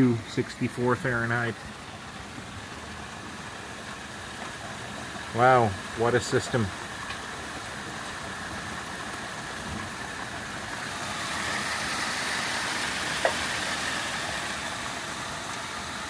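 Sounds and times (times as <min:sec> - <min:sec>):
heavy rain pouring: 0:04.8 - 0:16.0.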